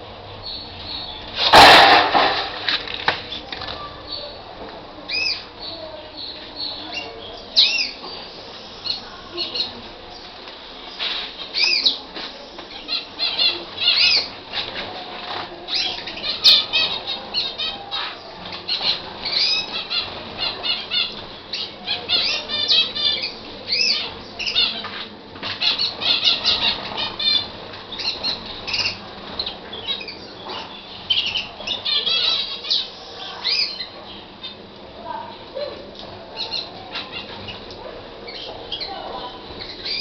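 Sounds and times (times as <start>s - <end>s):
canary singing trills: 5.1s - 12.0s, 12.7s - 14.7s, 15.7s - 34.7s, 36.3s - 40.0s.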